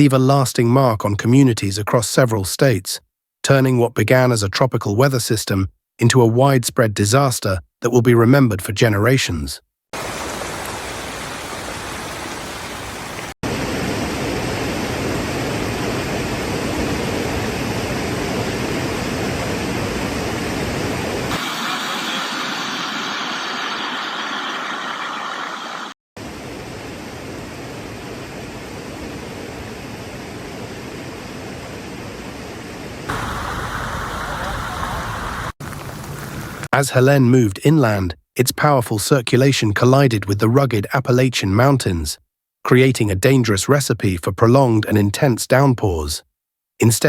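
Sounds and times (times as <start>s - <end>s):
heavy rain: 10.0s - 13.9s, 33.1s - 36.7s
flowing floodwater: 10.0s - 15.6s, 33.1s - 36.7s
wind: 24.5s - 36.8s.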